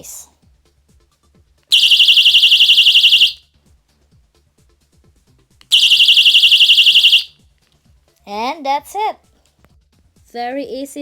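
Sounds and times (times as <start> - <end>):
personal alarm shrill pulsing tone: 1.7 - 3.4, 5.7 - 7.3.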